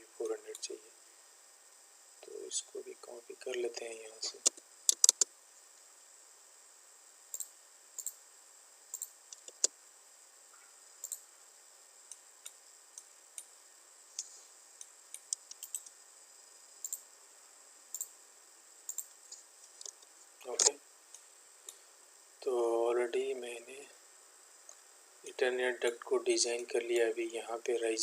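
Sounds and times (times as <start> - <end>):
faint steady hiss: 0.0 - 28.0
computer mouse clicking: 4.4 - 5.3, 7.3 - 8.2, 8.9 - 9.7, 11.0 - 11.2, 14.2 - 15.9, 16.8 - 17.0, 17.9 - 18.1, 18.9 - 19.1.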